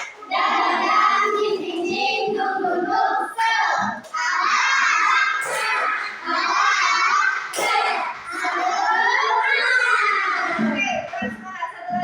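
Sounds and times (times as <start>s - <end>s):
children chanting in chorus: 0.0s - 11.0s
sharp claps: 7.3s - 8.9s.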